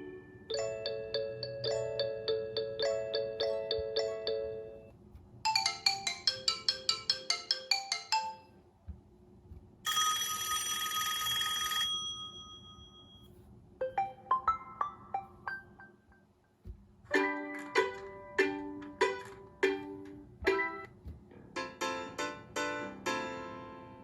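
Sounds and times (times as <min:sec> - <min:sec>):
plucked ringtone melody: 0:00.0 - 0:04.9, 0:05.5 - 0:08.5, 0:13.8 - 0:16.1, 0:17.1 - 0:20.9.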